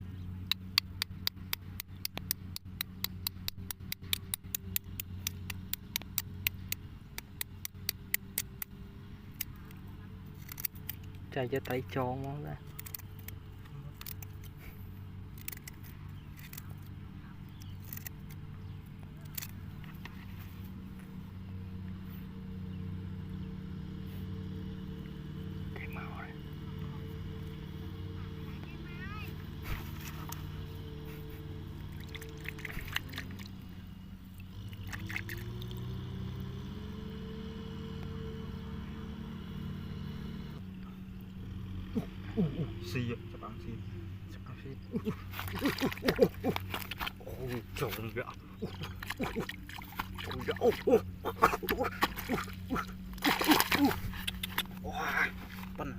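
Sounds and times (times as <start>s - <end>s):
small engine running: 0.0s - 55.9s
sharp clicks and ticks: 0.4s - 14.6s, 15.3s - 16.9s, 54.0s - 54.8s.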